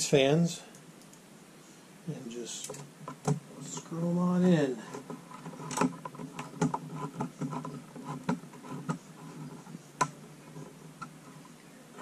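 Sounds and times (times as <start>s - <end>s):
light clicks and taps: 0.7s - 1.2s.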